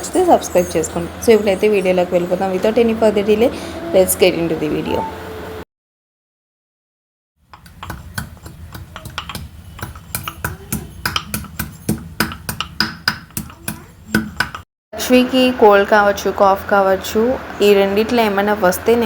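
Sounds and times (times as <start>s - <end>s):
sharp taps and clicks: 7.5s - 14.6s.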